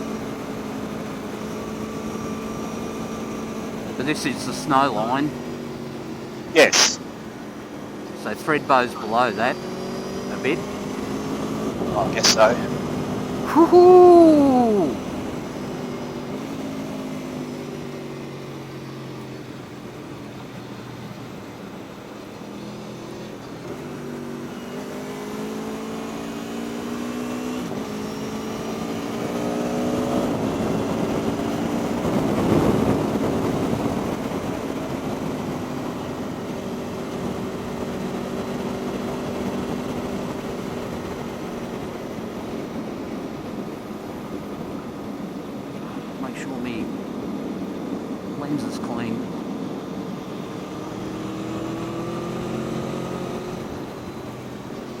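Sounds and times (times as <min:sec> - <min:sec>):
loud rush of noise: 0:06.5 - 0:07.4, 0:11.9 - 0:12.9.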